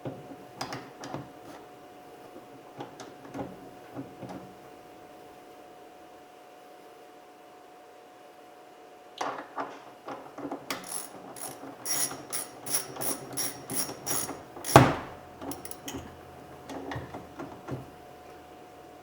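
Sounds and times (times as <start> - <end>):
hand ratchet clicking: 10.8 - 15.9.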